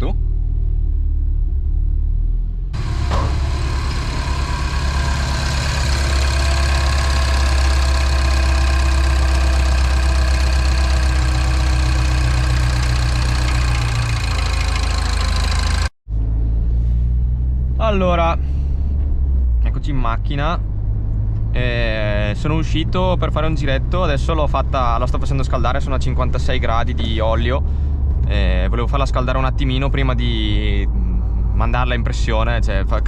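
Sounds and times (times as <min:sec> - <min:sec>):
car engine idling: 0:02.7 - 0:16.0.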